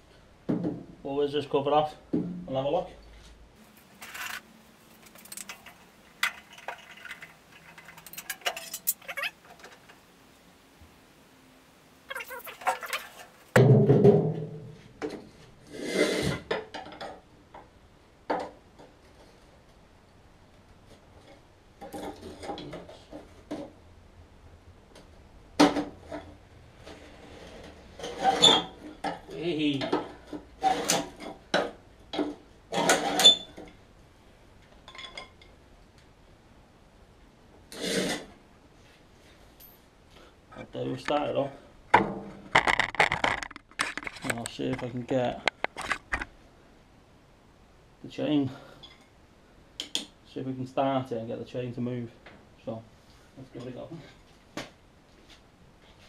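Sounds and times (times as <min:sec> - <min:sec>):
metal scrape: 0:03.6 - 0:09.9, 0:15.6 - 0:16.4
metal tools knocking and clinking: 0:05.0 - 0:09.8.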